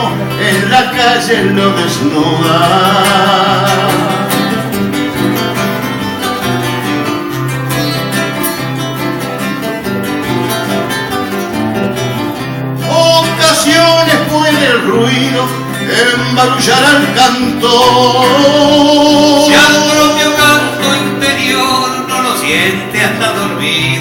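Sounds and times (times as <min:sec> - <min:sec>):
person singing: 0:00.0 - 0:05.0, 0:12.8 - 0:24.0
acoustic guitar plucking: 0:00.0 - 0:24.0.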